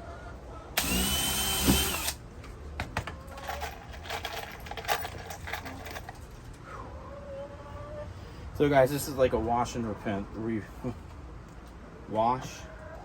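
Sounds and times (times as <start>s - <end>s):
power drill drilling into wood: 0.8s - 2.2s.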